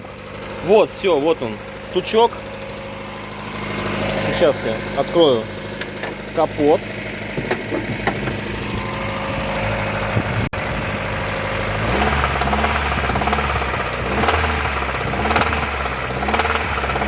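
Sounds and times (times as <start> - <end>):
car engine idling with knock: 1.5 - 17.0.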